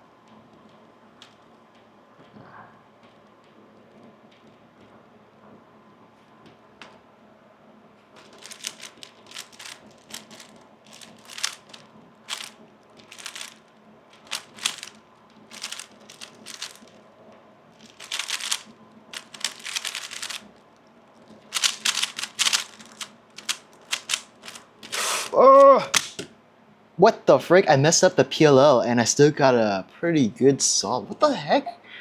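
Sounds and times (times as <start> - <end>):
puzzle cube clicking as turned: 8.2 - 13.6, 14.2 - 14.9, 15.5 - 16.9, 17.8 - 20.5, 21.5 - 26.3.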